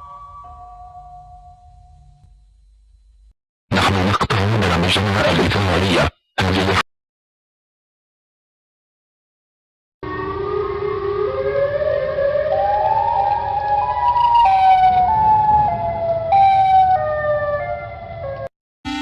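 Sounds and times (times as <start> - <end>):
emergency alert siren: 10.0 - 19.0.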